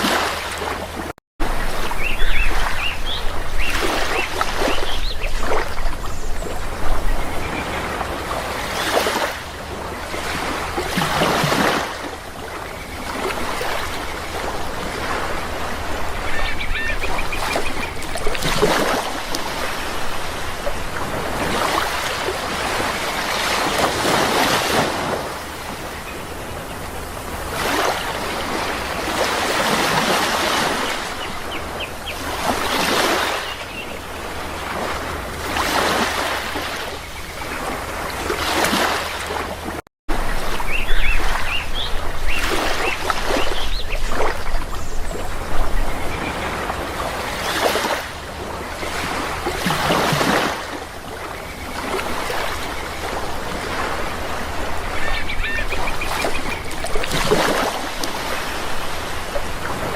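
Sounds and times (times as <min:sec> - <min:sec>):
sea waves washing in: 0:00.0 - 0:59.9
bird calls: 0:01.7 - 0:09.4, 0:12.4 - 0:19.9, 0:29.6 - 0:34.2, 0:40.3 - 0:48.0, 0:51.1 - 0:59.9.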